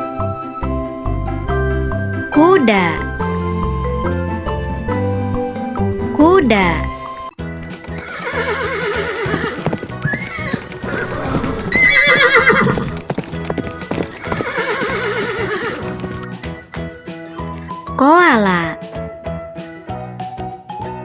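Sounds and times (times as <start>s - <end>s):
hooves clip-clopping: 7.4s - 21.0s
horse whinnying: 7.9s - 16.3s.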